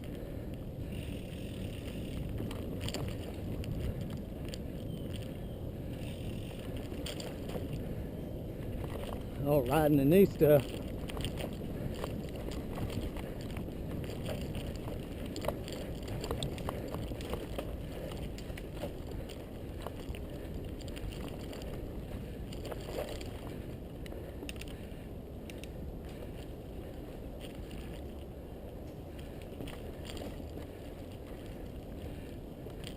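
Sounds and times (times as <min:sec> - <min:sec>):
bike clicks and rattles: 0:00.0 - 0:32.9
bike tyres rumbling on dirt: 0:00.0 - 0:32.9.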